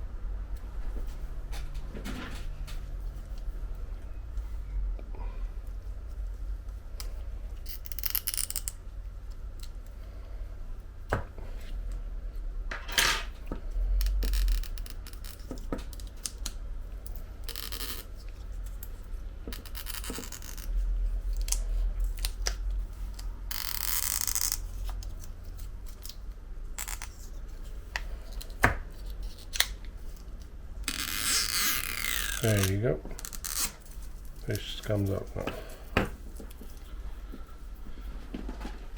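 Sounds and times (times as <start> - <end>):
low steady hum: 0.0 - 38.9
adhesive tab scratching and rubbing: 30.9 - 35.2.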